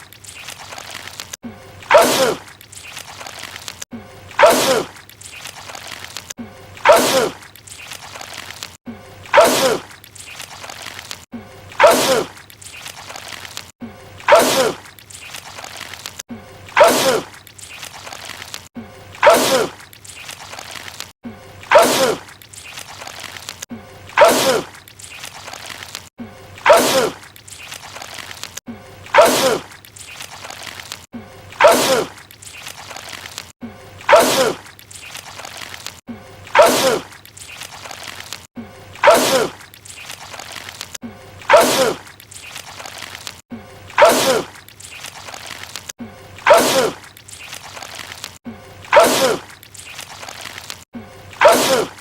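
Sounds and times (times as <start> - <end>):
man sneezing wetly: 1.9 - 2.4, 4.4 - 4.9, 6.8 - 7.4, 9.3 - 9.9, 11.8 - 12.3, 14.3 - 14.8, 16.8 - 17.3, 19.2 - 19.8, 21.7 - 22.2, 24.2 - 24.7, 26.6 - 27.2, 29.1 - 29.7, 31.6 - 32.2, 34.1 - 34.6, 36.5 - 37.1, 39.0 - 39.6, 41.5 - 42.0, 44.0 - 44.5, 46.4 - 47.0, 48.9 - 49.5, 51.4 - 52.0
man sneezing: 29.2 - 29.6, 36.6 - 37.0, 46.5 - 47.0, 48.9 - 49.4, 51.4 - 52.0.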